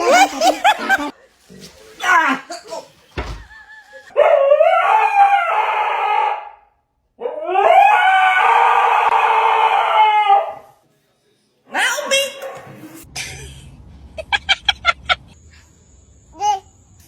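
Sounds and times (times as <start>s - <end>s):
dog howling: 7.2s - 10.6s.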